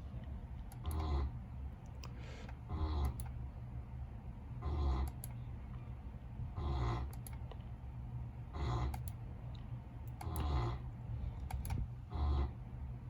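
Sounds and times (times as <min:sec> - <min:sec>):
computer mouse clicks: 0:00.6 - 0:01.2, 0:01.8 - 0:03.4, 0:05.0 - 0:05.4, 0:07.0 - 0:07.7, 0:08.8 - 0:10.6, 0:11.4 - 0:11.9.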